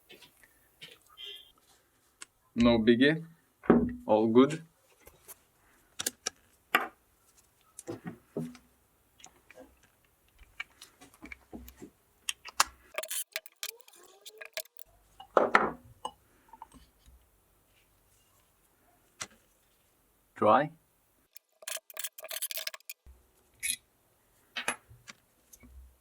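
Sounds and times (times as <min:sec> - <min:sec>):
metal tools and parts clinking: 0:12.9 - 0:14.9, 0:21.4 - 0:23.8.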